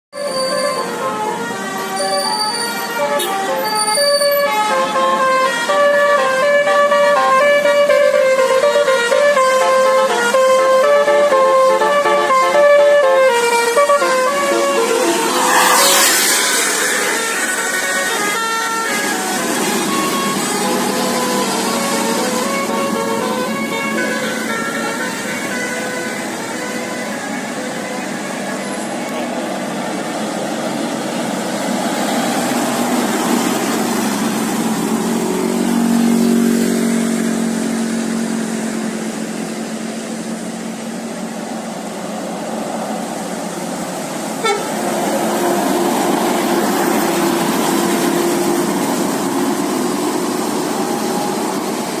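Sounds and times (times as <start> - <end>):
musical bus air horn: 0.1 - 29.8, 44.2 - 52.0
engine and traffic noise: 0.1 - 52.0.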